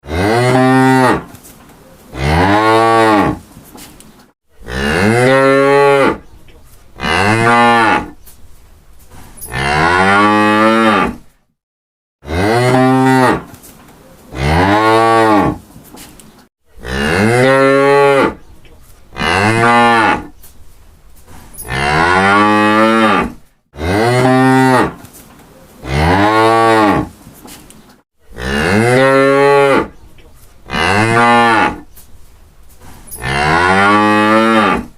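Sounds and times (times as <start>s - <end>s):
cattle mooing: 33.2s - 34.9s.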